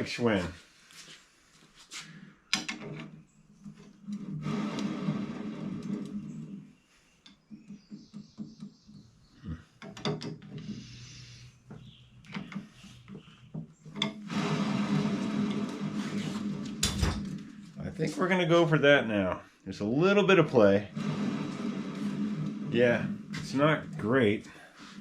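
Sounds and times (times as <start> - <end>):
rough rubbing and grating: 3.6 - 6.7, 10.4 - 18.8, 20.4 - 25.0.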